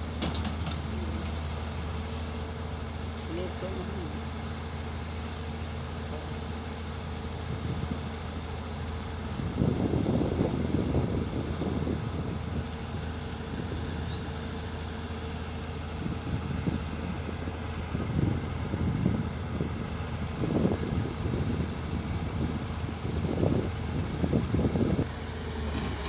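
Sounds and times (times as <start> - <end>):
excavator diesel engine running: 0.0 - 26.0
low rumbling bursts: 0.0 - 26.0.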